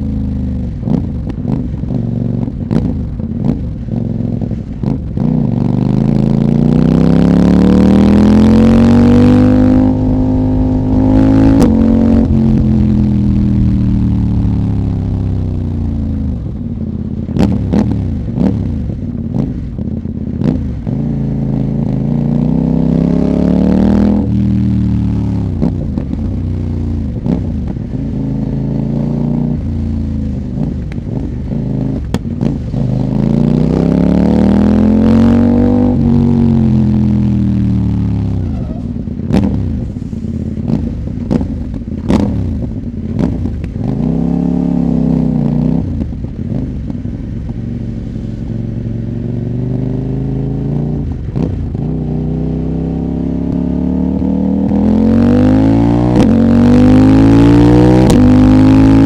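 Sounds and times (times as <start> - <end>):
motorcycle engine revving: 0.0 - 59.0
exhaust pops: 38.5 - 43.8, 58.0 - 58.3.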